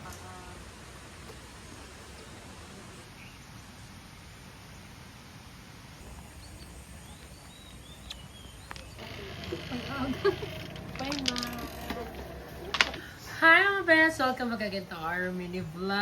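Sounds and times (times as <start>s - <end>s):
steady background hiss: 0.0s - 16.0s
bird chirps: 6.2s - 10.7s.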